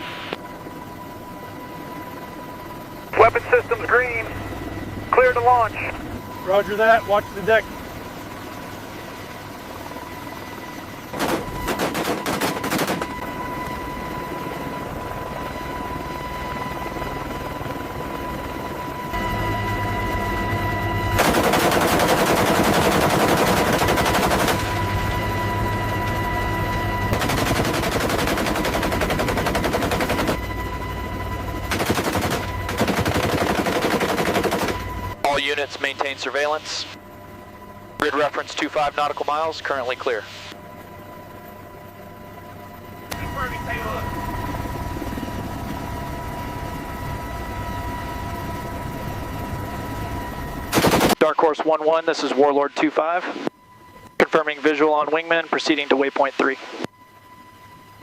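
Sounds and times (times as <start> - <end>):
steady high whine: 0.0 - 58.0
rotary machine gun firing: 11.1 - 13.2, 21.1 - 24.8, 27.1 - 30.4, 31.7 - 34.8, 50.7 - 51.2.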